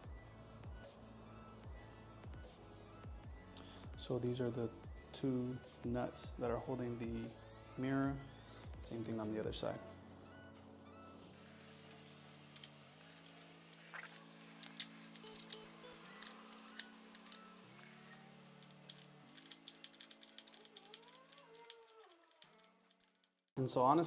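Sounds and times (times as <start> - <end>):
quiet background music chords: 0.0 - 23.1
hand tools clicking: 11.4 - 23.4.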